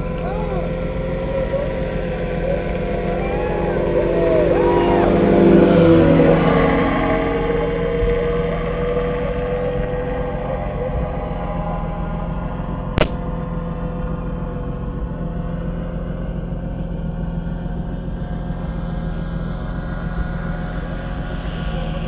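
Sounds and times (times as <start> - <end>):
car engine running while driving: 0.0 - 22.0.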